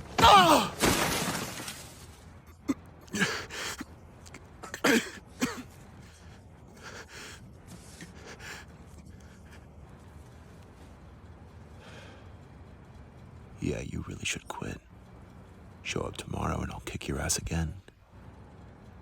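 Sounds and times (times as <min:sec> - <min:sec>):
crashing noise: 0:00.0 - 0:02.2
person grunting and gasping: 0:00.2 - 0:00.8, 0:02.6 - 0:03.8.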